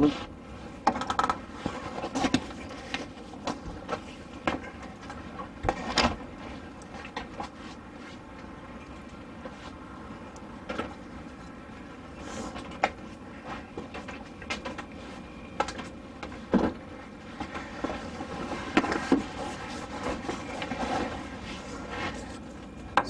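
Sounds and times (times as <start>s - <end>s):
objects knocking and clattering: 0.8s - 6.2s.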